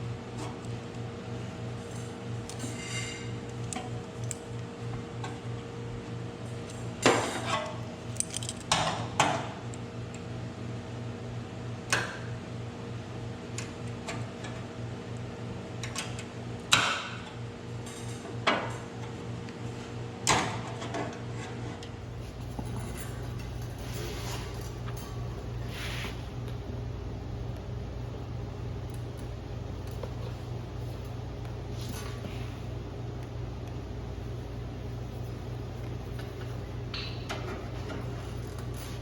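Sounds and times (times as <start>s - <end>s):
steady low hum: 21.9s - 39.0s.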